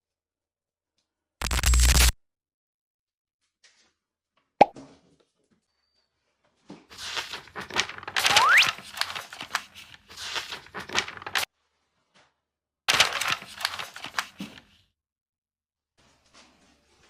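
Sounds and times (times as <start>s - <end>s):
packaging crinkling and ripping: 7.0s - 11.5s, 12.9s - 14.6s.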